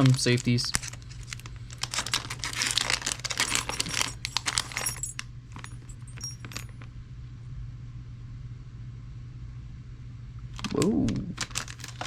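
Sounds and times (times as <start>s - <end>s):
metal parts clinking: 0.0s - 6.9s, 11.4s - 12.0s.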